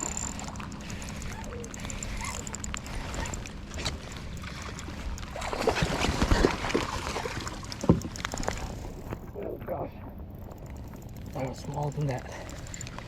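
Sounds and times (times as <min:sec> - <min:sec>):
water splashing: 0:00.0 - 0:09.5.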